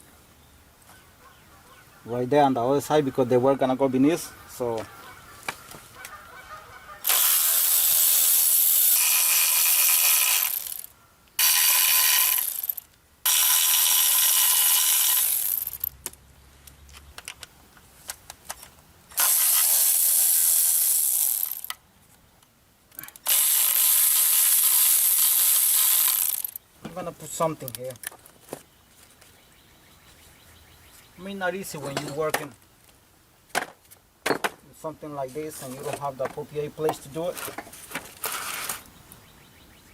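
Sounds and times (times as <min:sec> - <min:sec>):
ratchet wrench running: 0:07.0 - 0:15.9, 0:19.2 - 0:21.8, 0:23.0 - 0:26.6.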